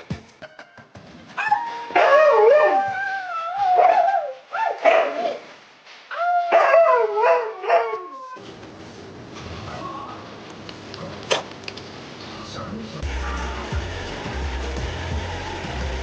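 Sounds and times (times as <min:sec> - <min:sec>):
husky howling: 0:01.4 - 0:05.5, 0:06.1 - 0:08.4.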